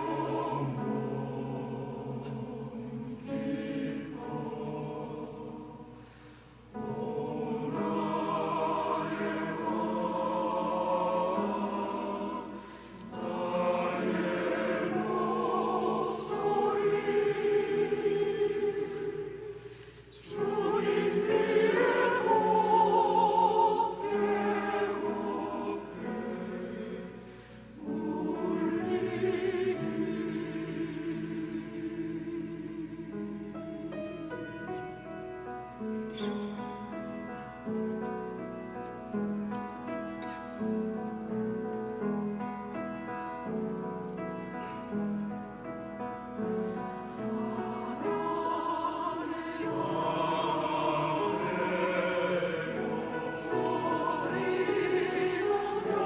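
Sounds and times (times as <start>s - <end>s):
church choir singing: 0.0s - 56.0s
singers breathing: 5.9s - 6.7s, 12.5s - 13.1s, 19.5s - 20.2s, 27.2s - 27.8s.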